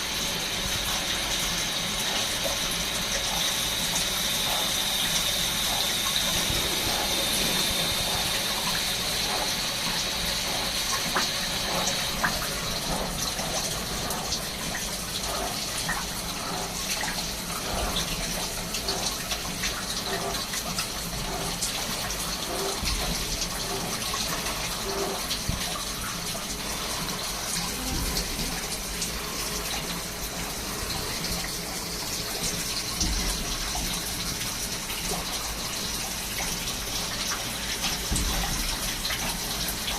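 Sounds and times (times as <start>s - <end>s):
lathe machining: 0.0s - 19.2s
cutting fluid splashing hiss: 0.8s - 14.4s.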